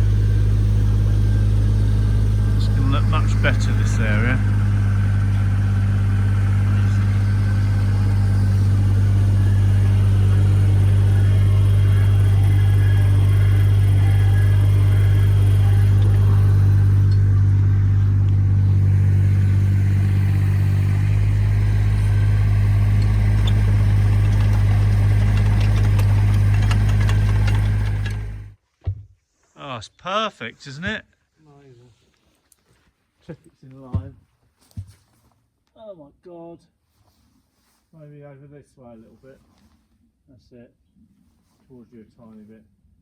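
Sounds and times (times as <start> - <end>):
earth auger engine running: 0.0 - 28.6.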